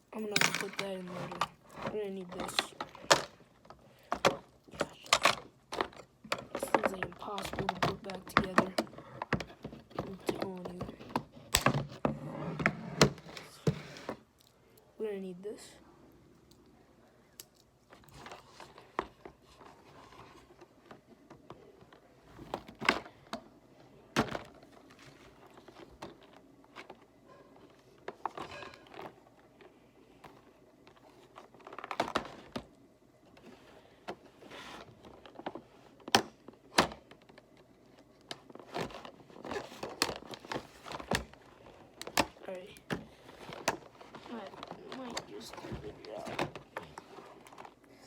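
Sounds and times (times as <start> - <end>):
knocks and clicks of small items: 0.2 - 12.1
plastic packaging rustling: 23.9 - 32.7, 33.3 - 48.0.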